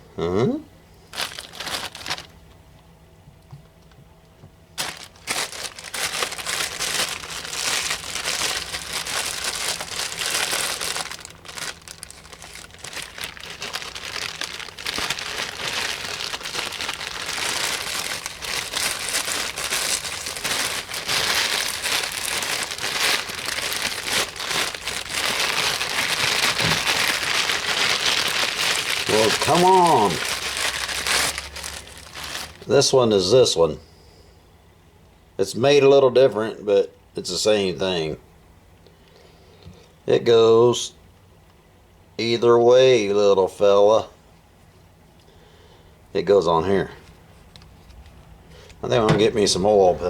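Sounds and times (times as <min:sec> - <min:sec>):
crinkling and rustling: 0:01.1 - 0:02.6, 0:03.5 - 0:32.7, 0:47.0 - 0:50.0.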